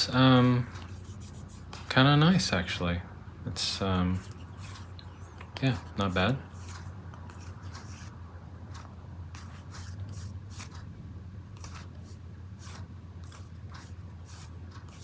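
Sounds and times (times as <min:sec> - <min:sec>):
cards being shuffled: 0:00.5 - 0:01.9, 0:04.0 - 0:10.9, 0:11.5 - 0:15.0.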